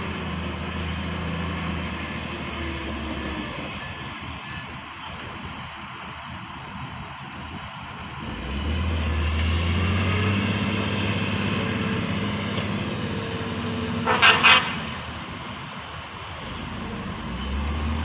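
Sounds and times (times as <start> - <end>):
heavy diesel engine running: 0.0 - 18.0
loud horn blasts: 14.0 - 15.1.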